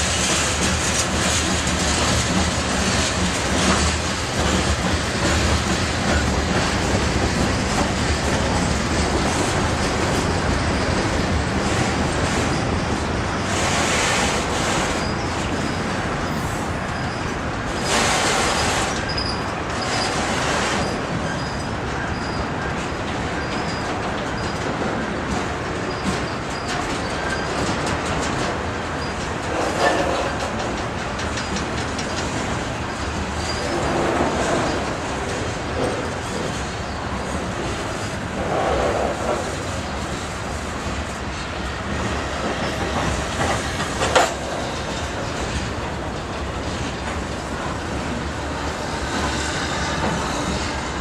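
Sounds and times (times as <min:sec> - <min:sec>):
freight train cars rumbling and rattling: 0:00.0 - 0:51.0
high-pitched wheel squeals: 0:14.8 - 0:22.5.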